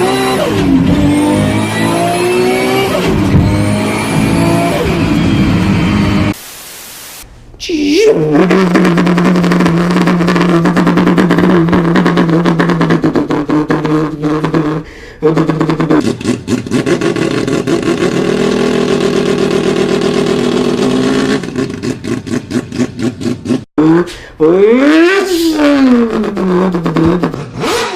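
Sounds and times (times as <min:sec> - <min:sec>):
person imitating car engine: 0:07.6 - 0:27.9.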